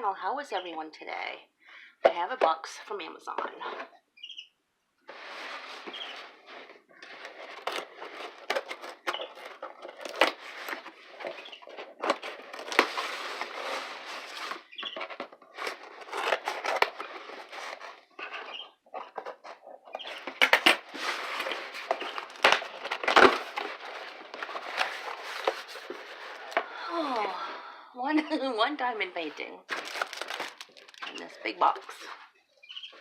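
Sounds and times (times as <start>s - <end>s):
cardboard box rustling and tearing: 5.4s - 26.6s, 29.7s - 31.0s.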